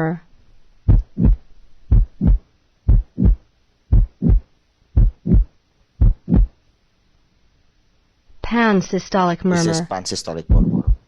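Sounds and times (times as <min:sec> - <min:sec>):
heartbeat with murmur: 0:00.9 - 0:06.6, 0:10.5 - 0:11.0.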